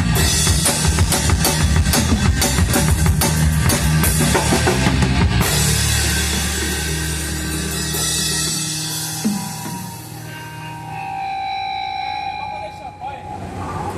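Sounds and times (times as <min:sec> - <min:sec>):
drums hitting hard: 0:00.0 - 0:10.3
rock band playing: 0:00.0 - 0:13.6
held guitar chord ringing: 0:05.5 - 0:13.9.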